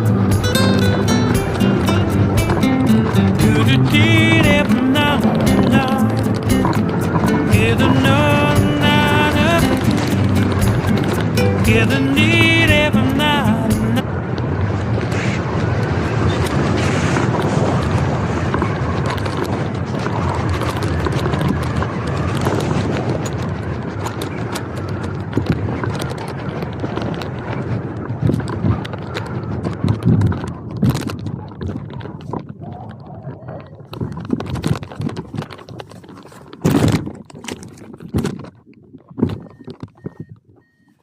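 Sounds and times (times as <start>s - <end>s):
wind rushing over microphone: 0.0s - 41.0s
knocks and rustles: 33.9s - 40.9s.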